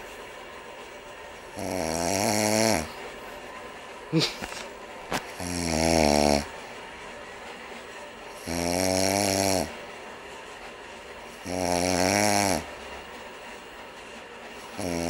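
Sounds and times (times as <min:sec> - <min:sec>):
man snoring: 0:01.6 - 0:02.9, 0:05.4 - 0:06.5, 0:08.4 - 0:09.7, 0:11.4 - 0:12.7, 0:14.8 - 0:15.0.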